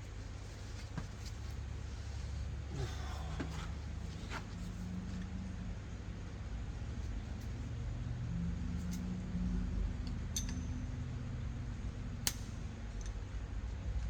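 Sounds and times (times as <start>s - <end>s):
metallic clicks of tools: 10.0s - 10.8s, 12.2s - 13.2s.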